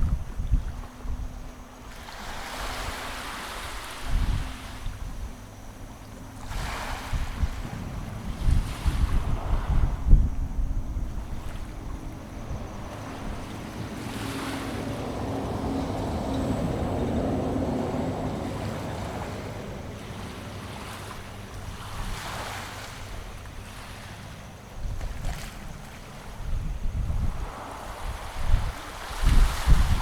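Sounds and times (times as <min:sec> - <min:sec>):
wind buffeting microphone: 0:00.0 - 0:03.0, 0:03.8 - 0:30.0
sea waves washing onto beach: 0:11.2 - 0:26.4.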